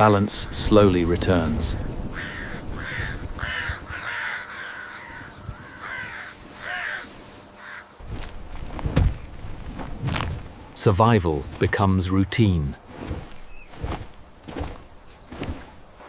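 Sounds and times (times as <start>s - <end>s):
bird calling: 1.8s - 8.4s, 13.0s - 16.0s.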